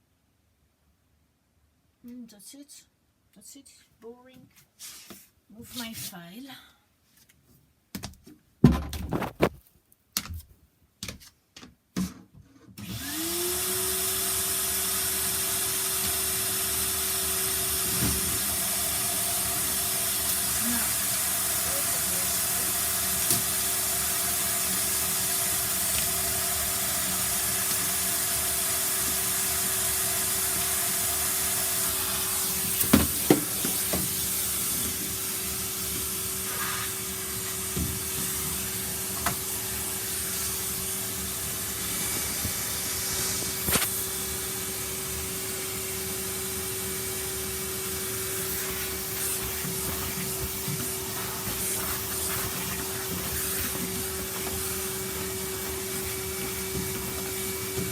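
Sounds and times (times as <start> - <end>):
vacuum cleaner running: 12.8 - 57.9.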